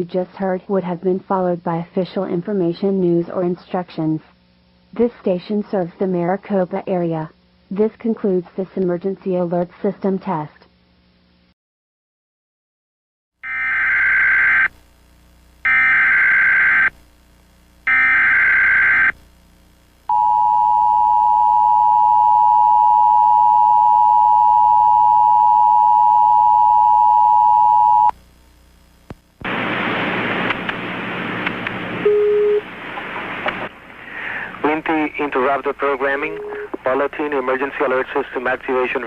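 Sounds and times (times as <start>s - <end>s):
radio static hiss: 28.2s - 39.0s
two-tone attention signal: 32.0s - 32.6s.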